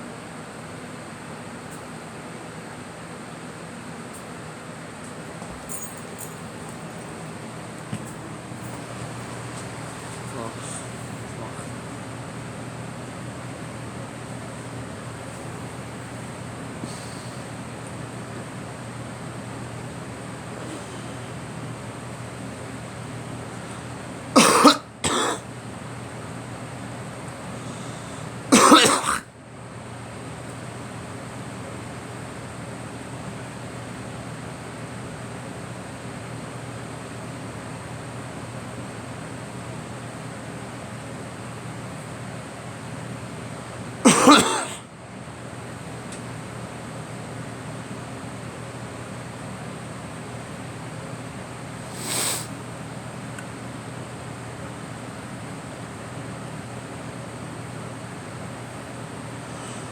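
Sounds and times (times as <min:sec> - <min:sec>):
steady background hum: 0:00.0 - 0:59.9
person coughing: 0:24.4 - 0:25.5, 0:28.5 - 0:29.3, 0:44.1 - 0:44.9.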